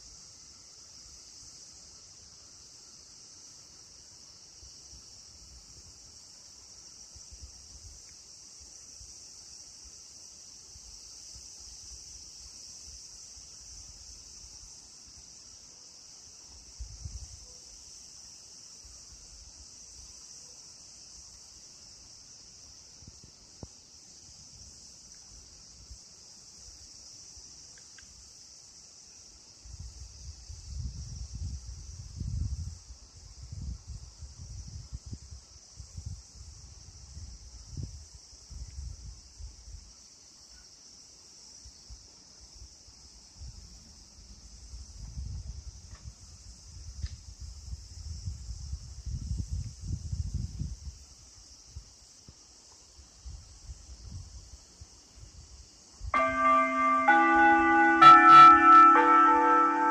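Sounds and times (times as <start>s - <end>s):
steady high-pitched hiss: 0.0s - 59.9s
wind rumble on microphone: 16.8s - 17.4s, 29.7s - 39.9s, 44.4s - 52.0s, 53.2s - 54.6s.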